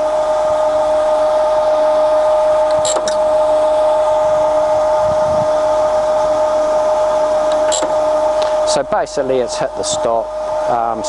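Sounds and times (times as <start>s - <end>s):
hydraulic pump whining: 0.0s - 11.0s.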